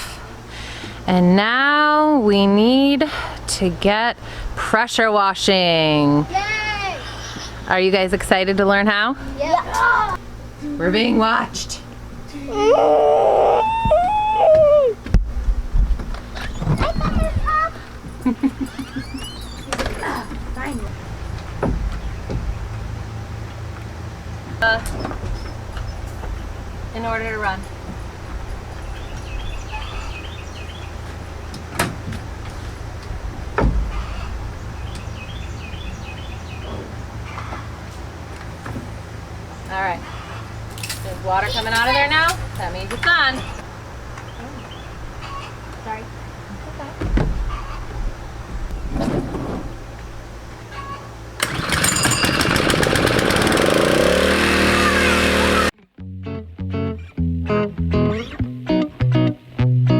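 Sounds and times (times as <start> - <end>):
steady low hum: 0.0 - 51.4
birds chirping: 16.3 - 23.4, 24.6 - 31.7, 33.3 - 38.3, 39.0 - 49.0
pressure washer engine running: 51.4 - 55.7
guitar music: 55.8 - 59.9.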